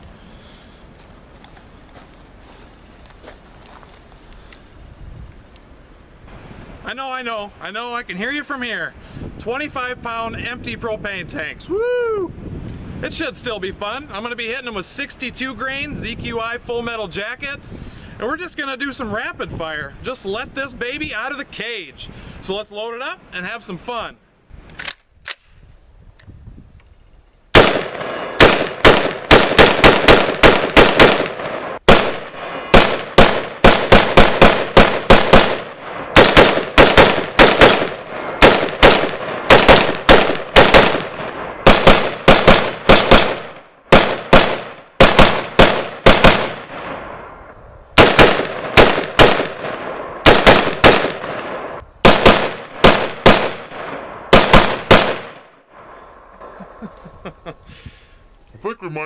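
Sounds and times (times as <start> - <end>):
rapid rifle fire: 27.6 - 47.0, 48.0 - 55.5.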